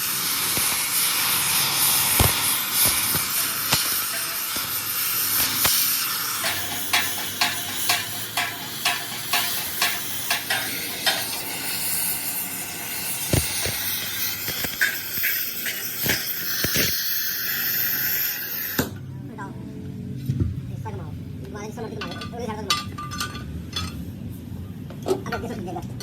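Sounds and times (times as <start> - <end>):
arc welding sizzling hiss: 0.0 - 18.9.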